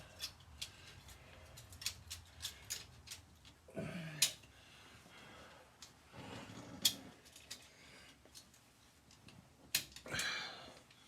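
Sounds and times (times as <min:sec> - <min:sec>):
low grunt: 0:03.7 - 0:04.3.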